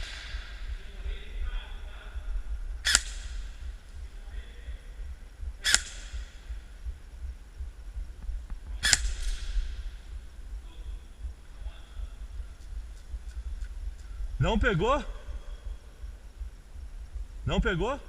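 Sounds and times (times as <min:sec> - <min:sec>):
airsoft rifle shots: 0:02.8 - 0:03.8, 0:05.6 - 0:06.7, 0:08.8 - 0:10.1.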